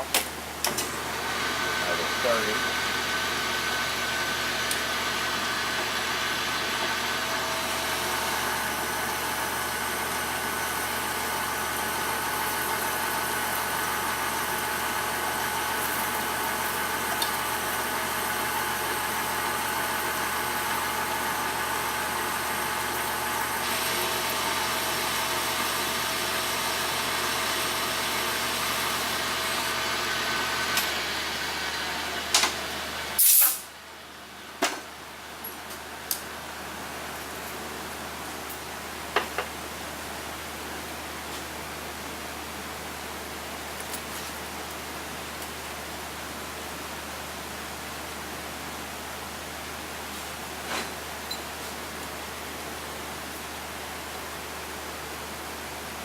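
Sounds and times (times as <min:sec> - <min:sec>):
lathe running with whine: 0:00.8 - 0:33.2.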